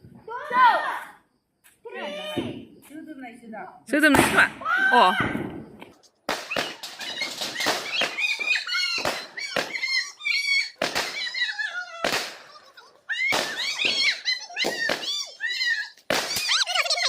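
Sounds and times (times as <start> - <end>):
shrill whistling of fireworks: 1.9 - 3.4, 4.0 - 17.0
firecrackers banging and popping: 2.2 - 2.8, 4.0 - 17.0.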